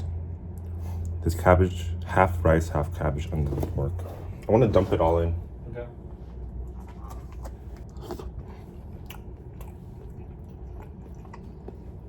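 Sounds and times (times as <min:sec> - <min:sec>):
person chewing food: 0:00.0 - 0:01.2, 0:06.2 - 0:12.0.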